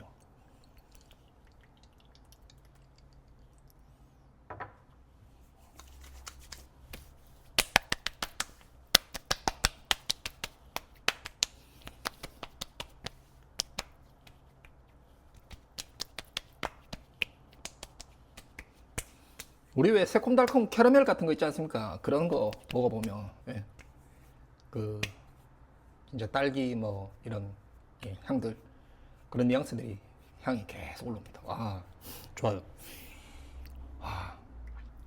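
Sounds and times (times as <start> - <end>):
hands slapping skin: 5.8 - 19.6, 22.3 - 24.0, 25.0 - 25.3.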